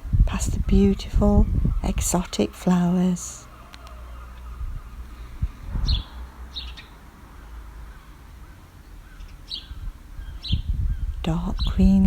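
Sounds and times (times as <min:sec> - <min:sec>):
low rumble: 0:00.0 - 0:02.4, 0:04.3 - 0:06.7
bird chirping: 0:00.0 - 0:12.0.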